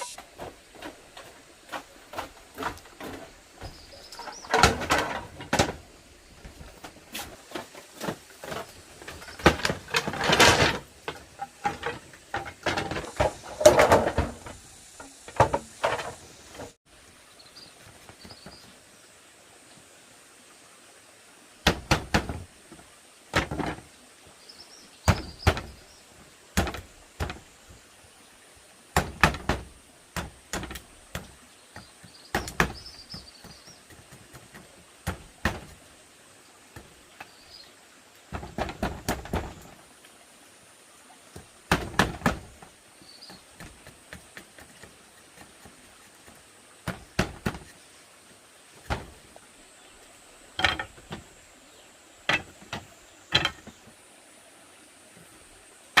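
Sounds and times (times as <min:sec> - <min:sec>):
bamboo knocks and thuds: 0:00.1 - 0:16.8, 0:21.6 - 0:23.9, 0:25.0 - 0:25.8, 0:26.5 - 0:27.5, 0:28.9 - 0:35.9, 0:36.7 - 0:37.3, 0:38.3 - 0:39.8, 0:41.3 - 0:47.8, 0:48.8 - 0:49.3, 0:50.6 - 0:51.4, 0:52.2 - 0:53.9.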